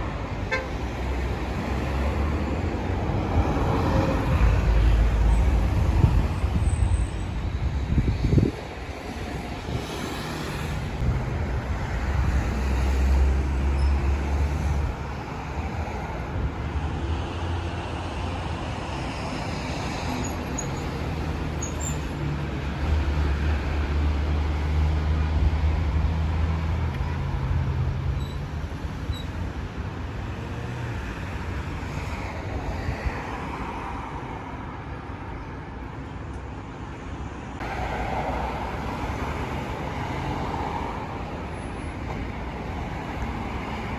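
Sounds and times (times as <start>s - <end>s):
passing vehicles: 0.0s - 43.9s.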